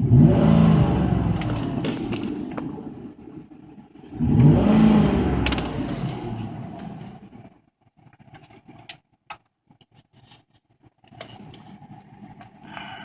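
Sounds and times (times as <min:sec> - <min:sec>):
car engine revving: 0:00.0 - 0:03.2, 0:04.1 - 0:07.5.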